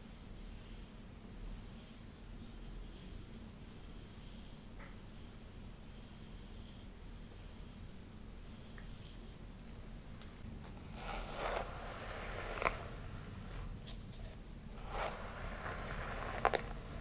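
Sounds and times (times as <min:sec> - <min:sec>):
brush swishing through hair: 0:10.7 - 0:17.0.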